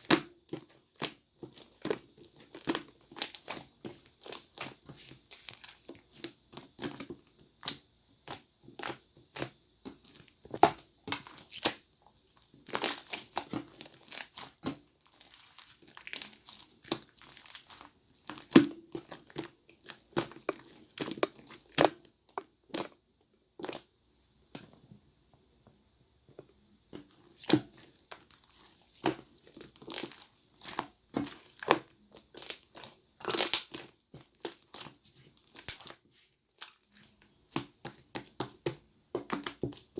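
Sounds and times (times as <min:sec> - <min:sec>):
slime crackling and snapping: 0:12.7 - 0:20.3, 0:27.4 - 0:36.0.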